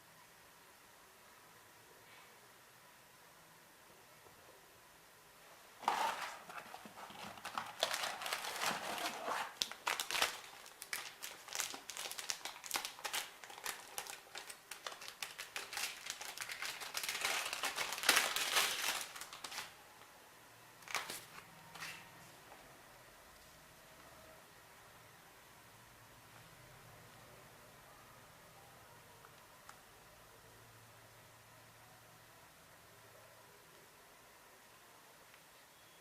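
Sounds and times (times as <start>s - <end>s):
plastic crinkling and rustling: 5.8s - 19.8s, 20.8s - 22.1s.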